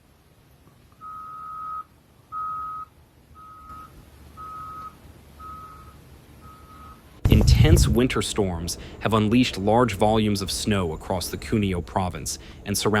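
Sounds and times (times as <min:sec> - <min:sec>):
vehicle reversing alarm beeping: 0:00.9 - 0:07.2.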